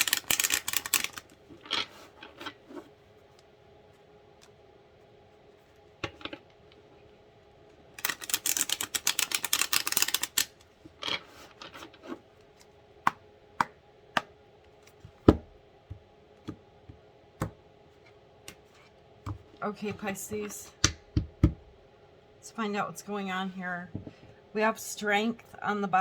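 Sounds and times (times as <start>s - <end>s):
cards being shuffled: 0.0s - 2.9s, 8.0s - 12.7s.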